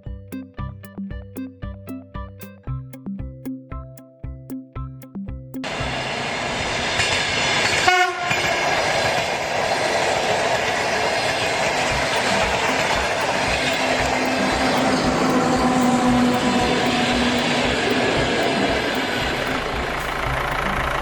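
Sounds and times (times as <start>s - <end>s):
train rumbling past: 5.6s - 21.0s
train horn blast: 7.6s - 8.9s, 12.1s - 18.2s.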